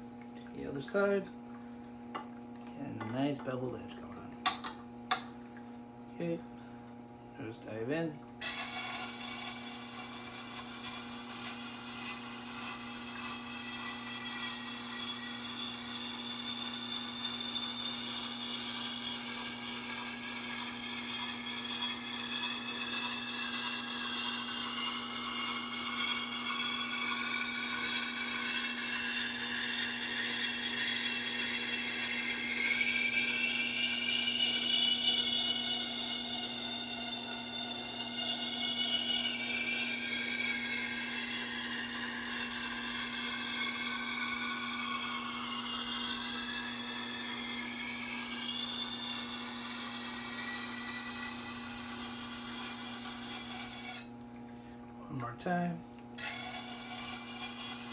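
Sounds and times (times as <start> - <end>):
sharpening stone grinding on steel: 8.4 - 54.1, 56.2 - 57.9
high squeal: 56.2 - 57.9.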